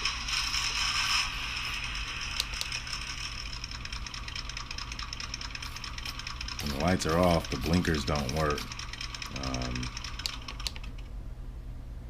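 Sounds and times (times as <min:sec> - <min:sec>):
simulated engine idle through small speaker: 0:02.2 - 0:10.3.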